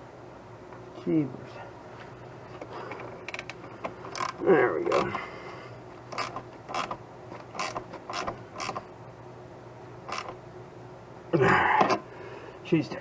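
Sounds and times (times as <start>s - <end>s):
ratchet wrench rasping: 4.1s - 5.0s, 6.1s - 8.8s, 10.1s - 10.4s.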